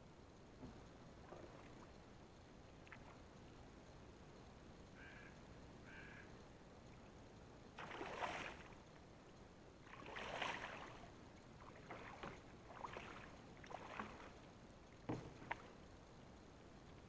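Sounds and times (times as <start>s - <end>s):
water sloshing and splashing: 0.6s - 2.0s, 2.7s - 3.3s, 7.8s - 8.8s, 9.8s - 15.8s.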